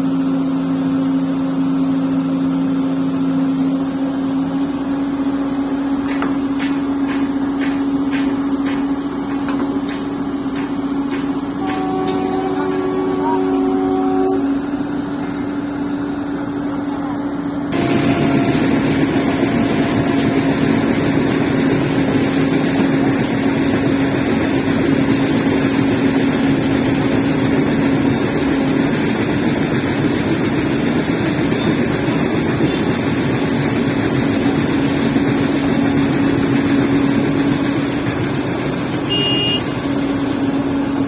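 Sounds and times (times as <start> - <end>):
excavator diesel engine running: 0.0 - 41.0.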